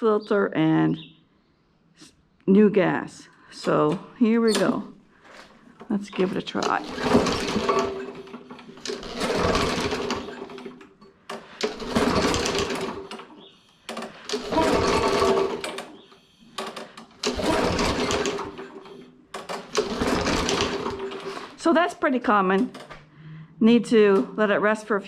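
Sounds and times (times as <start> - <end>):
lawn mower engine pull-start: 3.6 - 21.8.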